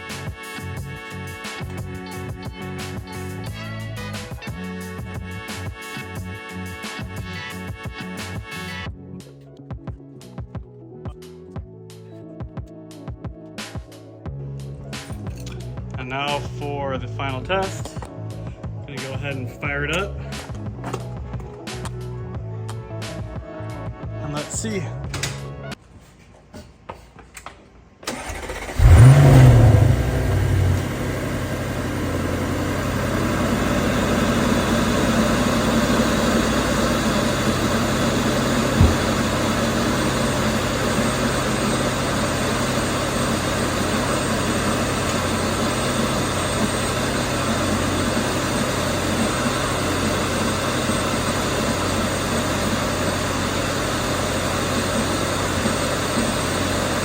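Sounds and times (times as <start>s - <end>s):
car engine starting and idling: 28.0s - 57.0s.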